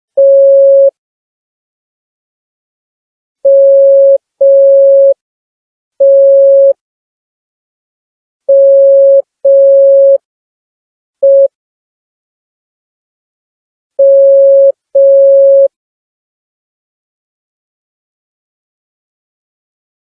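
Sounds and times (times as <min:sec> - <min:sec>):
morse code beeps: 0:00.2 - 0:00.9, 0:03.5 - 0:05.2, 0:06.0 - 0:06.7, 0:08.5 - 0:10.2, 0:11.2 - 0:11.5, 0:14.0 - 0:15.7.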